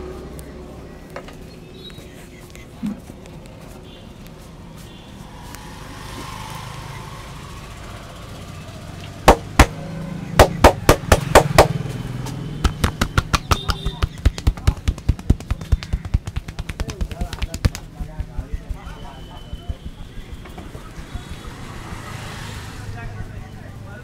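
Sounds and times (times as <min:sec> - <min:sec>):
hand slaps on head: 0:10.4 - 0:18.3.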